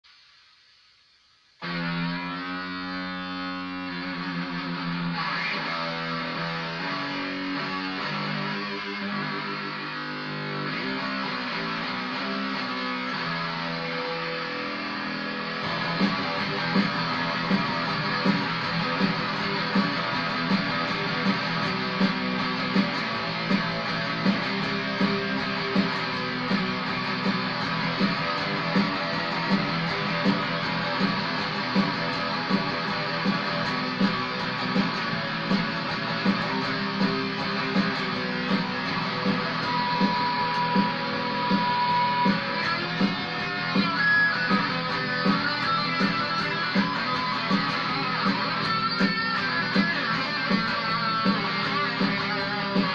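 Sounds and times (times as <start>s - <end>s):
electric guitar strumming: 1.6s - 52.9s
steady beat: 4.0s - 52.9s.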